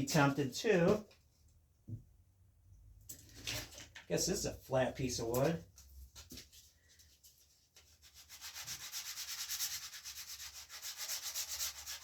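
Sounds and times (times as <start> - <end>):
sandpaper rasping on rawhide: 8.0 - 12.0.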